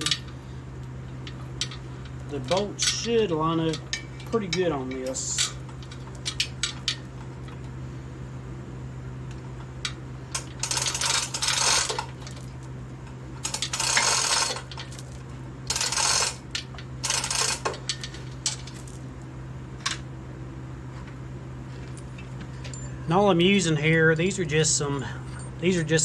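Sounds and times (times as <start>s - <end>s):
metal bolts and tools clinking: 0.0s - 0.3s, 1.2s - 7.7s, 9.8s - 12.6s, 13.4s - 19.0s.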